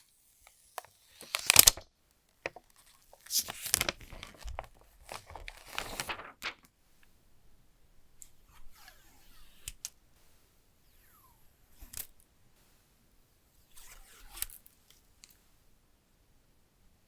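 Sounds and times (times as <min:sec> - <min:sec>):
packaging rustling: 0:02.5 - 0:06.7.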